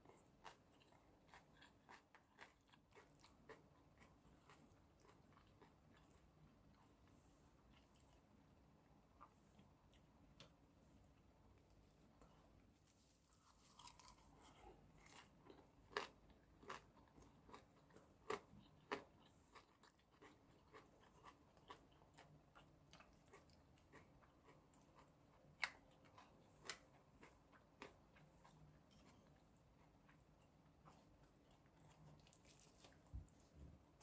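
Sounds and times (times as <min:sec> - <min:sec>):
person chewing and biting: 0:00.1 - 0:06.2, 0:13.4 - 0:29.4.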